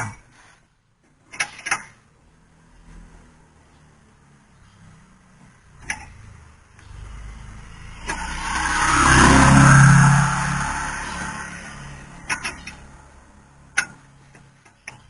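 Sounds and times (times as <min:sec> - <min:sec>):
vehicle passing by: 0:02.2 - 0:14.6
sharp metallic clicks: 0:05.8 - 0:07.0, 0:07.9 - 0:08.9, 0:10.8 - 0:15.0.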